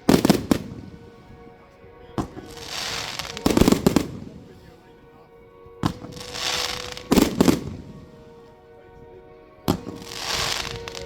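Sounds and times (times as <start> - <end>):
firework bangs: 0.0 - 5.0, 5.8 - 8.4, 9.7 - 11.0
firework hiss: 2.2 - 4.8, 5.8 - 8.4, 9.7 - 11.0.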